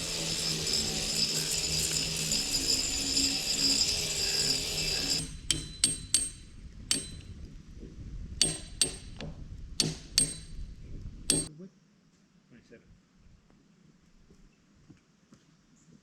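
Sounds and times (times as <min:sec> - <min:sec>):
sharp metallic clicks and knocks: 0:05.2 - 0:07.4, 0:08.4 - 0:10.7.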